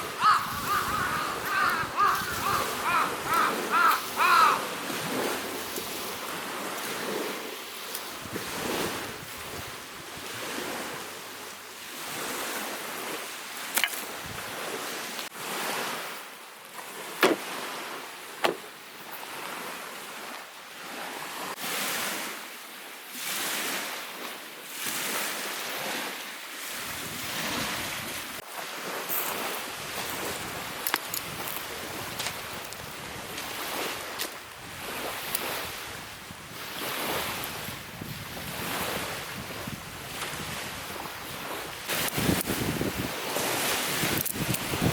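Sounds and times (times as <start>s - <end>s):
wind on microphone: 0.0s - 5.4s, 34.6s - 44.9s
lake waves washing onto shore: 0.0s - 44.9s.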